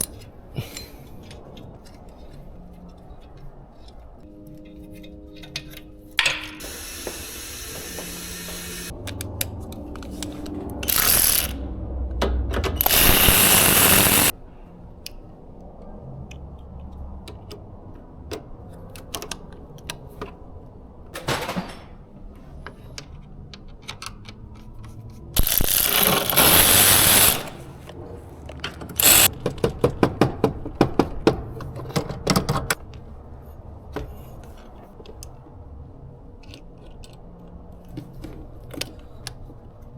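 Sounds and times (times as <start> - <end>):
power tool running: 6.6 - 8.9, 10.8 - 11.6, 12.8 - 14.3, 25.4 - 27.7, 29.0 - 29.3
sharp metallic clicks: 9.0 - 11.6, 12.5 - 14.3, 25.4 - 27.6, 29.0 - 29.3.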